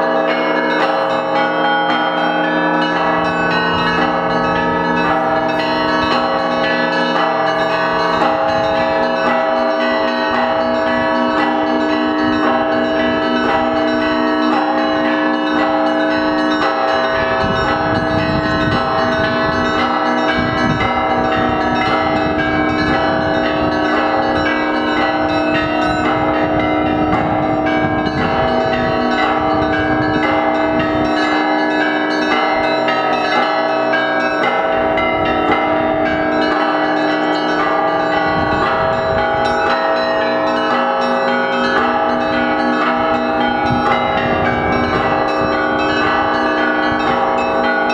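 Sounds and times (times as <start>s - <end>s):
church bells ringing: 0.0s - 47.9s
deep bell strokes: 0.0s - 47.9s.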